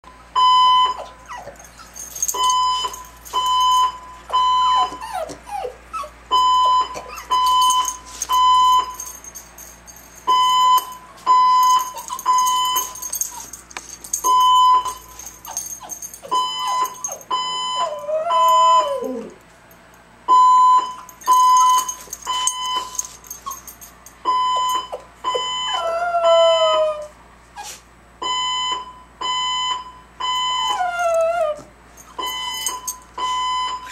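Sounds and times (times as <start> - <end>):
fire alarm beeping: 0.4 - 1.0, 2.3 - 5.0, 6.3 - 9.1, 10.2 - 13.0, 14.2 - 15.2, 16.3 - 18.9, 20.3 - 23.2, 24.3 - 25.8, 28.2 - 30.8, 32.2 - 33.9
dog howling: 17.8 - 19.4, 25.7 - 27.1.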